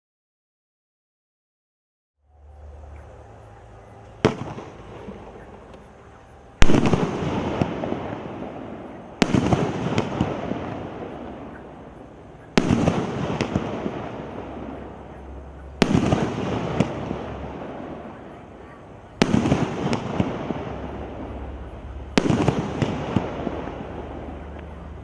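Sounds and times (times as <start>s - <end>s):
firework crackling: 2.4s - 25.0s
firework cake bangs: 6.6s - 11.6s, 12.5s - 14.9s, 22.1s - 24.0s.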